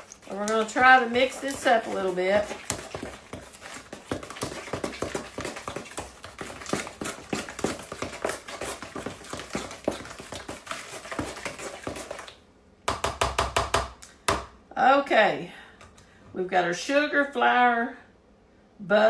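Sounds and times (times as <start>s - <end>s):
utensil scraping mixing bowl: 0.0s - 12.4s.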